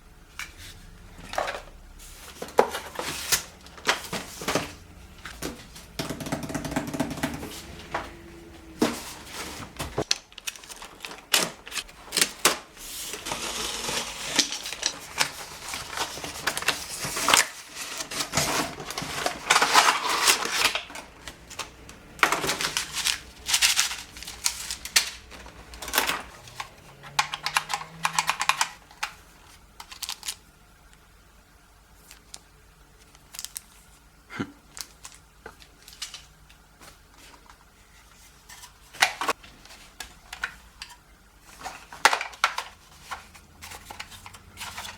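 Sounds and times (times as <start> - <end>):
packaging crinkling rustle: 8.7 - 30.5, 32.0 - 34.1, 34.7 - 44.9
packaging clicks and taps: 21.3 - 29.2.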